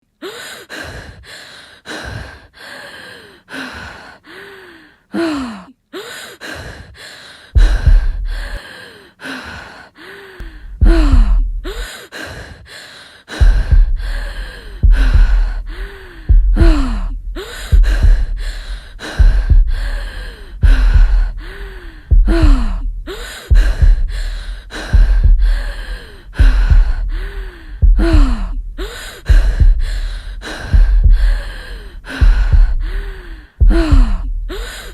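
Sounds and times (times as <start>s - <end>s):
voiced gasps and sighs: 0.0s - 34.9s
heavy deep rumble: 7.6s - 8.6s, 10.4s - 11.9s, 13.4s - 34.9s.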